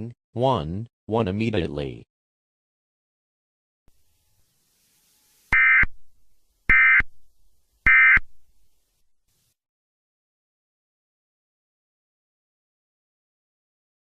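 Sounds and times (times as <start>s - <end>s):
harsh digital data bursts: 4.0s - 5.9s, 6.7s - 7.0s, 7.9s - 8.2s.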